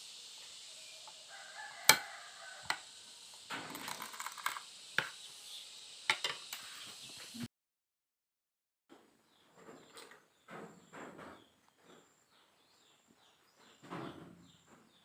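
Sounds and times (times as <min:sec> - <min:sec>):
rooster crowing: 0:00.8 - 0:03.3.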